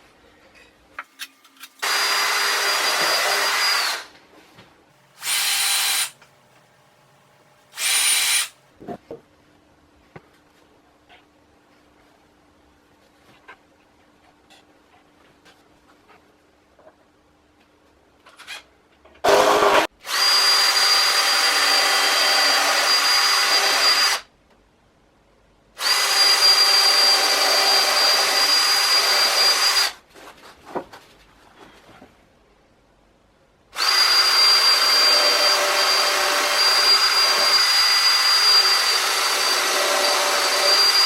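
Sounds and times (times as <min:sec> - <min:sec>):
power drill whining into wood: 0:01.2 - 0:04.1, 0:05.2 - 0:06.2, 0:07.7 - 0:08.6, 0:19.3 - 0:24.2, 0:25.8 - 0:30.0, 0:33.8 - 0:41.0.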